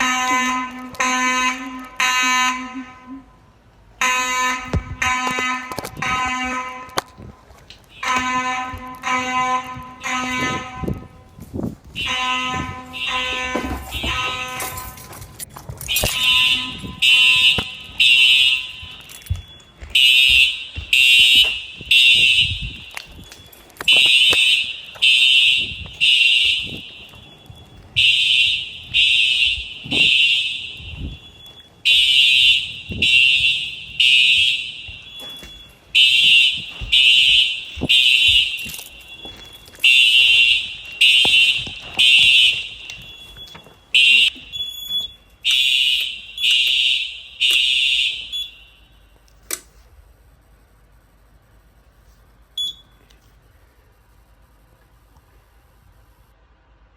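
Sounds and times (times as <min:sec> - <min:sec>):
fire alarm high-pitched beeps: 0:11.9 - 0:49.2, 0:52.6 - 0:53.0.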